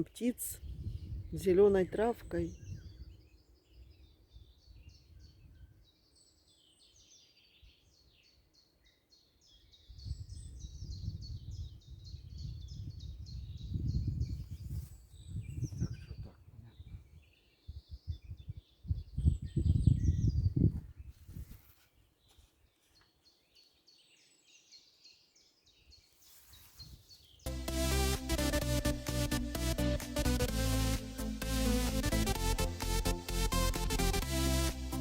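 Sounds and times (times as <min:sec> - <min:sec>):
songbirds singing: 0:00.0 - 0:35.0
low rumbling noise in gusts: 0:00.6 - 0:01.4, 0:10.0 - 0:21.1.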